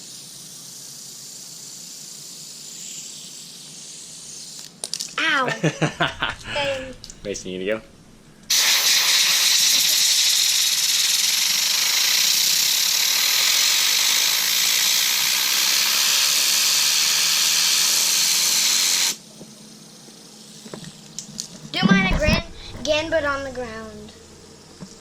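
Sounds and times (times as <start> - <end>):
compressed air hissing: 0.0 - 4.7, 6.0 - 19.2, 22.5 - 23.6.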